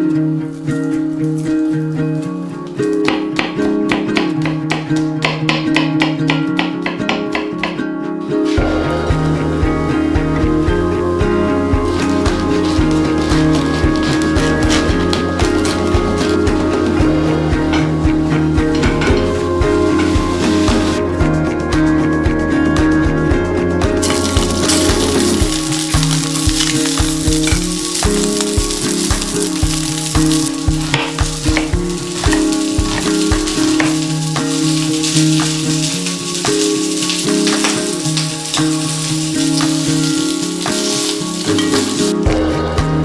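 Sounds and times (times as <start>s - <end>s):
plucked acoustic guitar: 0.0s - 43.0s
food sizzling in a pan: 8.4s - 21.1s, 24.0s - 43.0s
steady beat: 8.5s - 43.0s.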